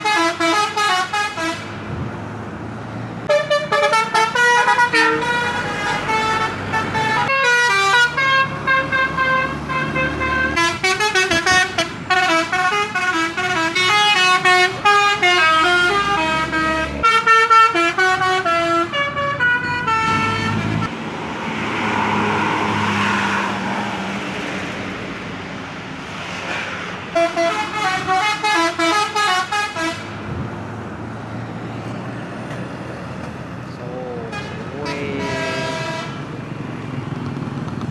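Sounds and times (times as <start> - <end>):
multi-tone air horns: 0.0 - 1.7, 3.3 - 20.9, 27.1 - 30.1, 34.3 - 36.2
engine and road noise: 0.0 - 37.9.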